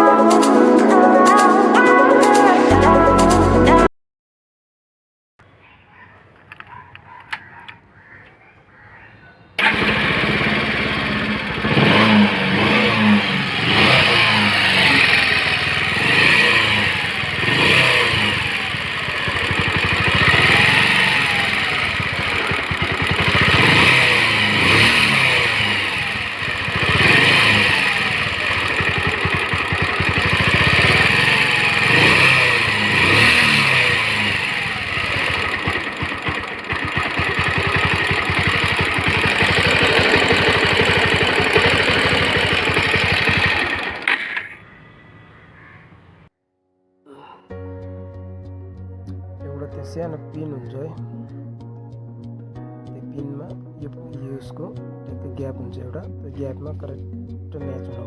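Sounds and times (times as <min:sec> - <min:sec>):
motorcycle engine revving: 0:09.6 - 0:45.0.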